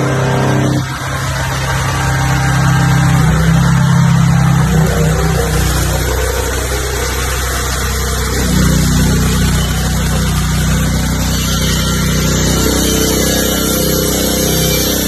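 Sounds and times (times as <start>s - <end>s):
diesel generator humming: 0.0s - 15.0s.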